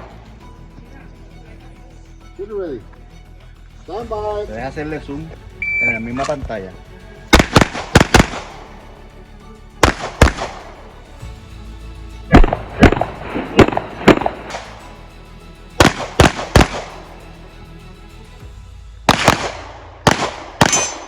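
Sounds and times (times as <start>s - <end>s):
pistol shots: 7.3s - 8.7s, 9.8s - 10.7s, 12.3s - 14.7s, 15.8s - 17.0s, 19.1s - 21.0s.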